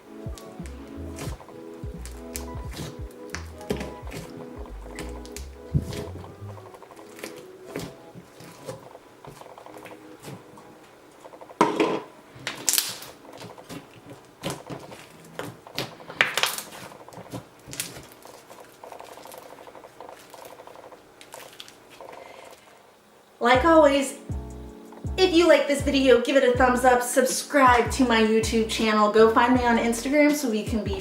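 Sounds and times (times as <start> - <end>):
slime crackling and popping: 2.0 - 10.4, 12.4 - 22.0.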